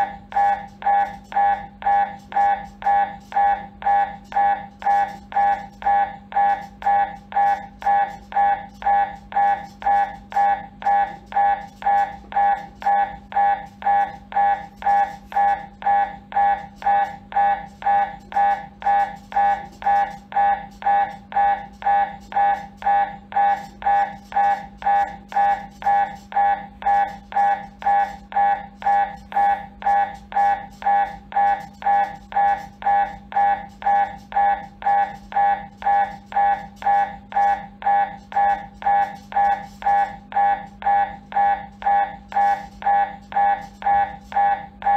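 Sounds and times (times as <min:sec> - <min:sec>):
mri buzzing beeps: 0:00.0 - 0:44.9
steady low hum: 0:00.0 - 0:44.9.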